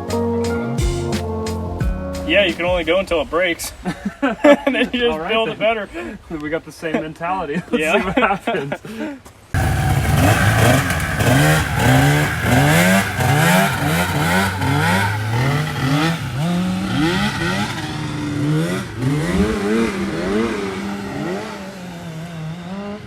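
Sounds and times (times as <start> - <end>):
buggy engines revving: 9.6 - 23.0.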